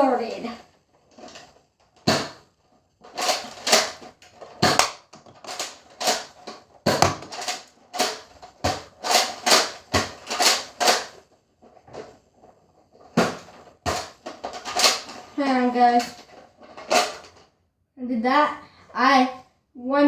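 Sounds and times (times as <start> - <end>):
toy blaster clacks and pops: 3.2 - 11.2.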